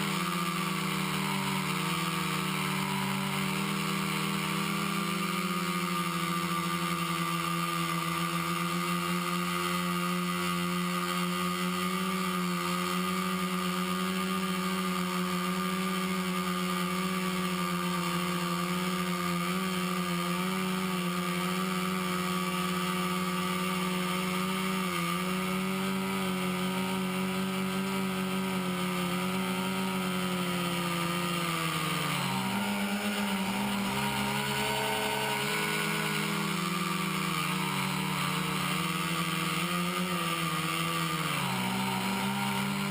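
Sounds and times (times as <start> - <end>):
quadcopter motors droning: 0.0 - 42.9.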